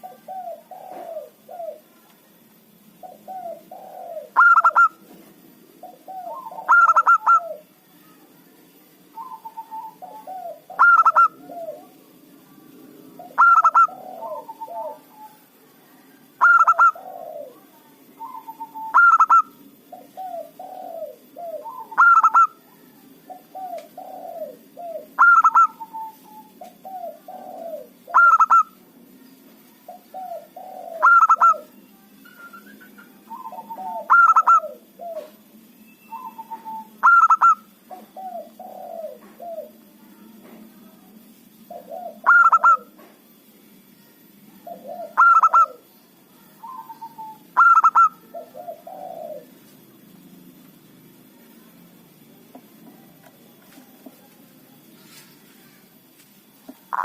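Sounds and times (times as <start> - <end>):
dove cooing: 0.0 - 2.0, 3.0 - 7.7, 9.1 - 15.6, 16.2 - 28.8, 29.9 - 35.5, 36.1 - 39.9, 41.6 - 43.1, 44.6 - 46.0, 46.6 - 50.2.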